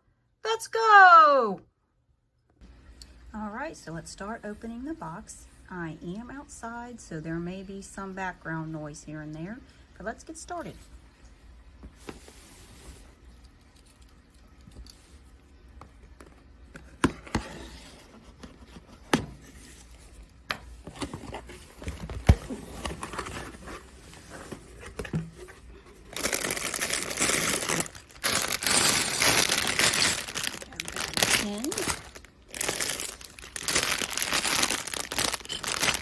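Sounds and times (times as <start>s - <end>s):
packaging tearing and crinkling: 26.1s - 36.0s.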